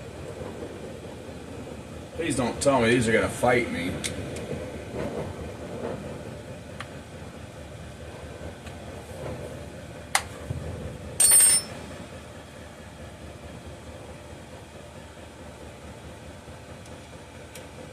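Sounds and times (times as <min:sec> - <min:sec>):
metallic clatter with ring: 0:11.2 - 0:11.8.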